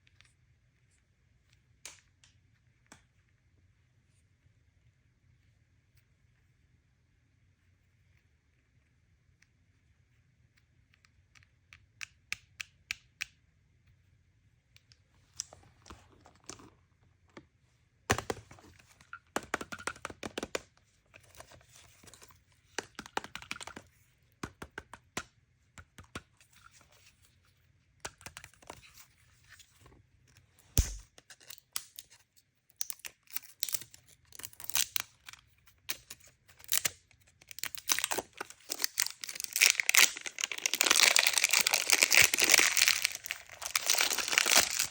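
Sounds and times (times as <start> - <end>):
packaging tearing and crinkling: 37.5 - 44.9.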